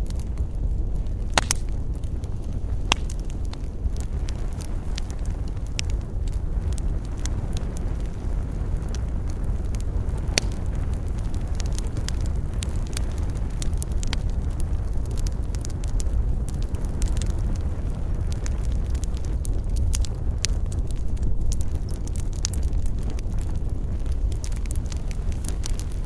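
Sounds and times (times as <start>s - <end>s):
campfire crackling and popping: 0.0s - 26.0s
campfire roaring: 0.0s - 26.0s.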